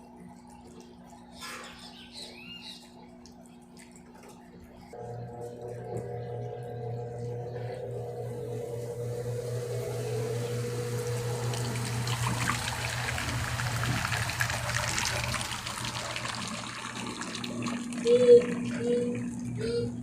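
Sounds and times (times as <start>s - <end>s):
steady low hum: 2.9s - 20.0s
water pouring into washing machine: 5.7s - 19.8s.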